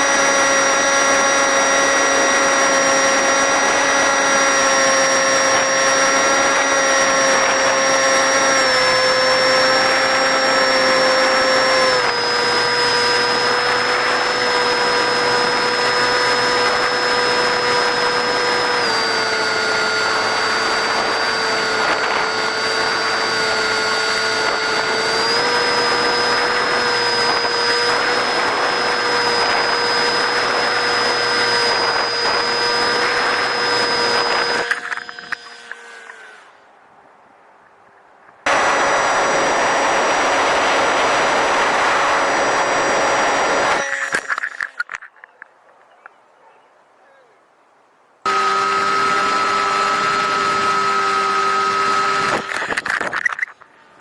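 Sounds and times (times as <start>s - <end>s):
electric motor and propeller whine: 0.0s - 36.7s, 38.4s - 45.1s, 48.2s - 54.0s.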